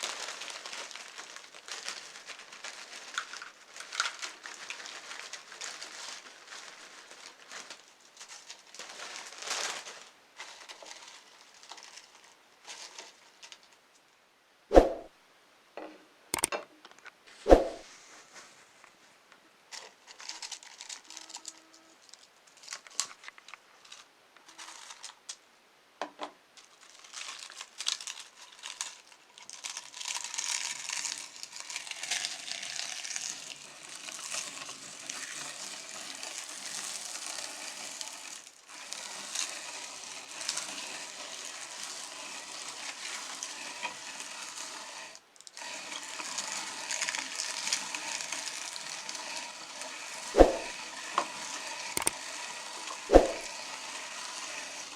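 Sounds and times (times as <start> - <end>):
meat grinder crunching chips: 0.0 - 13.6, 19.8 - 25.2, 26.6 - 54.9
potato chips crinkling: 0.0 - 13.7, 19.7 - 25.2, 26.6 - 39.5, 45.4 - 49.4.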